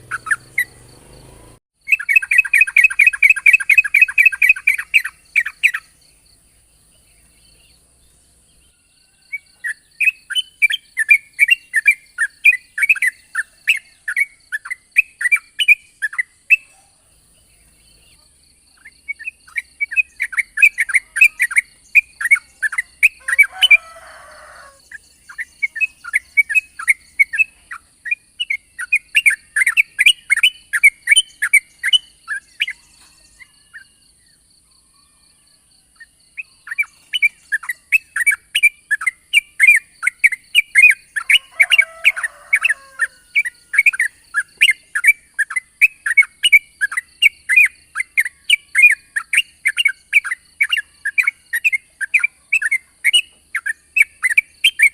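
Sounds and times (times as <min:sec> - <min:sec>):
bulbul singing chirped notes: 0:00.0 - 0:08.7.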